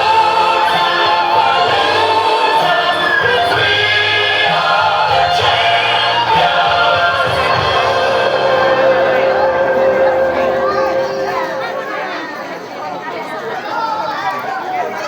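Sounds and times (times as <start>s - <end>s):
several voices singing together: 0.0s - 12.1s
steady bass line: 0.0s - 12.2s.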